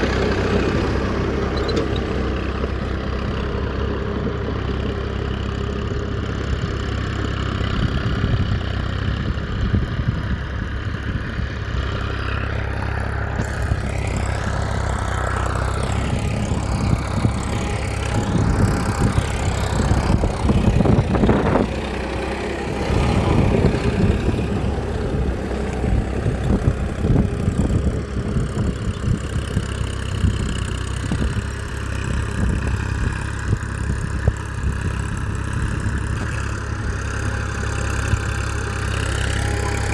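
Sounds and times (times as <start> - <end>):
motor running: 37.3 - 39.9.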